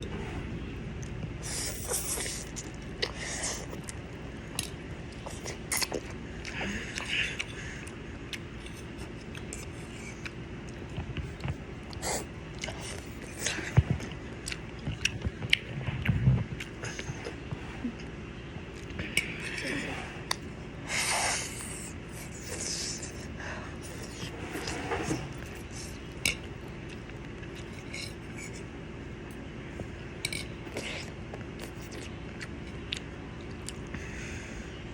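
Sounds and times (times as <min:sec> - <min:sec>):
steady low hum: 0:00.0 - 0:34.9
person chewing: 0:01.0 - 0:28.7, 0:30.2 - 0:34.2.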